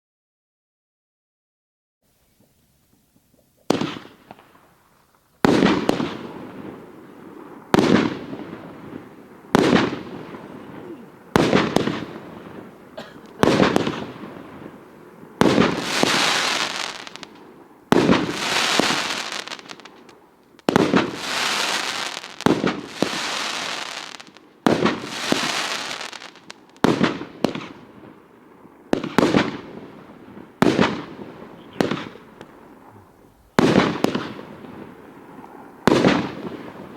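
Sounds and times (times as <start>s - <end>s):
firework bangs: 2.4s - 36.9s
firework hiss: 15.4s - 27.8s.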